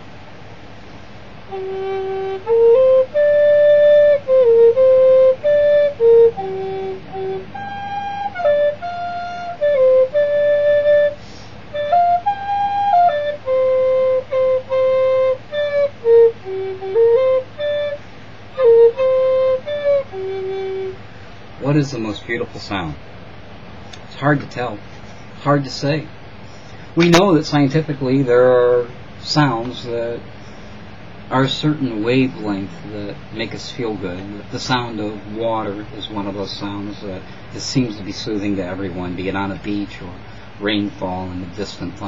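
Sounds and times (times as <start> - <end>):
solo flute melody: 1.4 - 22.2.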